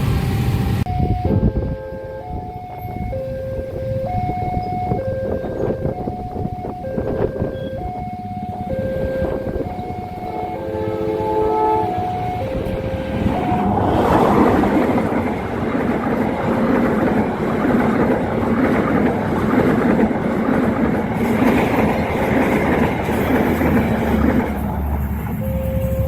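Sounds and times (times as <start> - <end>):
train passing at speed: 0.0 - 26.0
wheels clattering over rails: 2.6 - 26.0.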